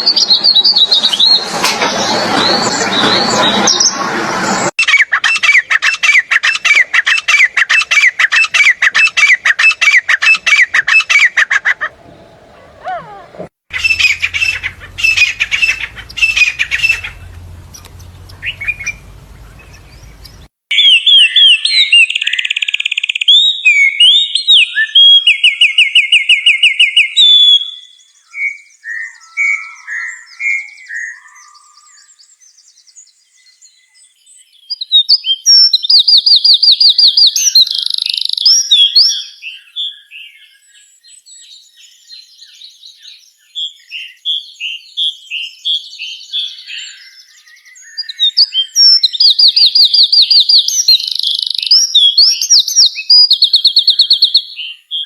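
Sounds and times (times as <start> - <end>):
birds chirping: 0.0 - 20.5
bird singing loud trills: 4.8 - 20.5, 34.7 - 55.0
low hum: 11.8 - 20.5.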